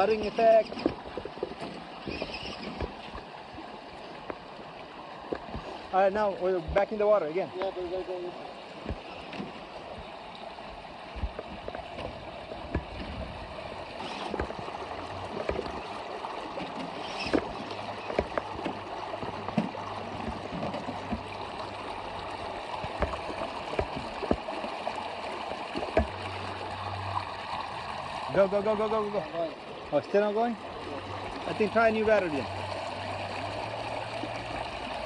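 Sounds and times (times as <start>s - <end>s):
creek water gurgling: 0.0s - 35.0s
toy trucks splashing over rocks: 13.9s - 16.0s, 16.8s - 26.4s.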